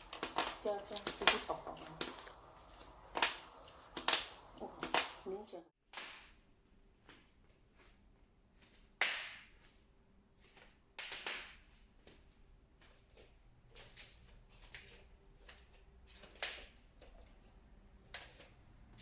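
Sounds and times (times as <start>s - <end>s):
wooden floor cracking and popping: 0.0s - 5.3s, 11.0s - 12.2s.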